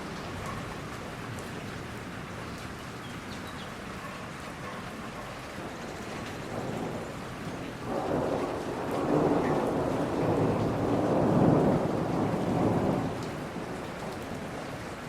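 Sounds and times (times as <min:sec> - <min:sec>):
steady rain falling: 0:00.0 - 0:15.0
rolling thunder: 0:06.2 - 0:14.6.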